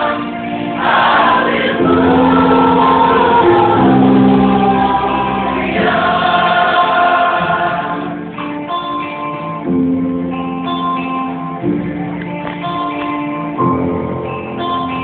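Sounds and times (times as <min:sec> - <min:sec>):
voices singing: 0:00.0 - 0:08.4.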